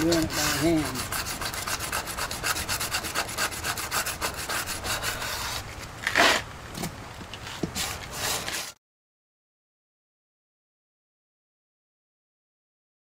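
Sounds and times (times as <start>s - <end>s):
sandpaper rubbing fiberglass: 0.0s - 6.4s, 7.5s - 8.8s
loud scrape: 0.0s - 6.5s, 7.5s - 8.8s.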